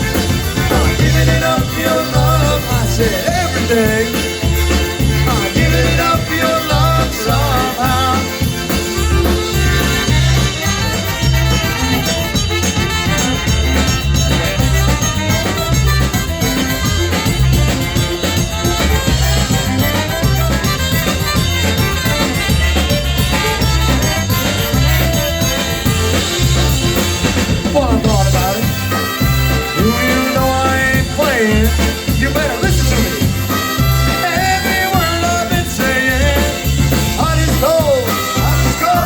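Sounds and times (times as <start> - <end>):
polka band playing: 0.0 - 39.0.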